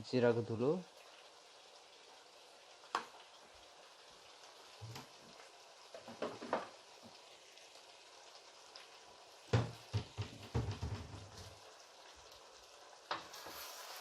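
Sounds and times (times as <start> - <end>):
pan sizzling faintly: 0.1 - 14.0
utensils scraping a pan: 13.3 - 14.0.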